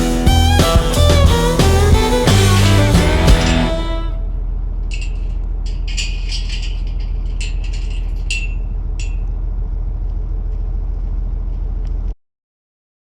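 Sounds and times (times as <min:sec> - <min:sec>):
tractor engine running: 0:00.0 - 0:12.2
clicking and rattling: 0:04.8 - 0:09.4.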